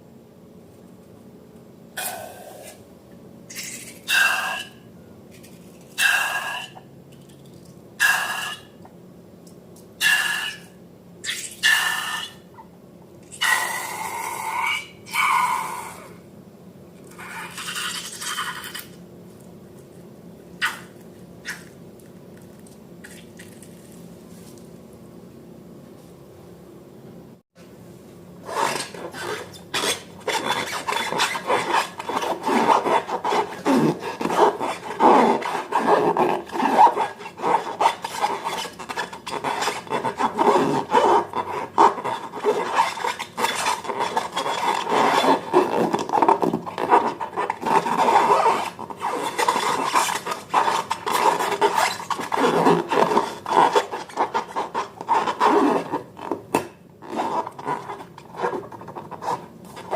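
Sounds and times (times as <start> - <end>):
slime rubbing and scraping by hand: 28.4 - 56.4.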